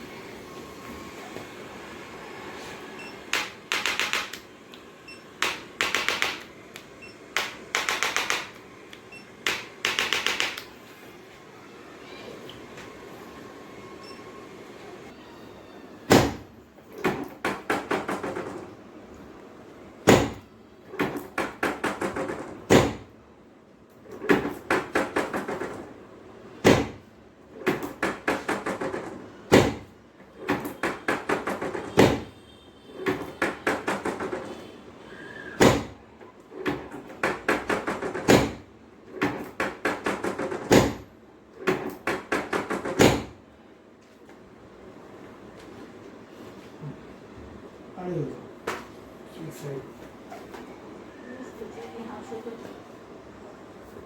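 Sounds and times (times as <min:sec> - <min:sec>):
sharp knocks on the body: 0:20.1 - 0:20.4.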